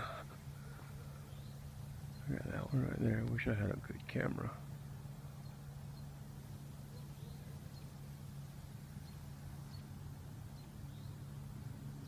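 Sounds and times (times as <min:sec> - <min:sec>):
bird chirping faintly: 0:00.0 - 0:04.2, 0:05.2 - 0:11.5
steady low hum: 0:00.0 - 0:12.0.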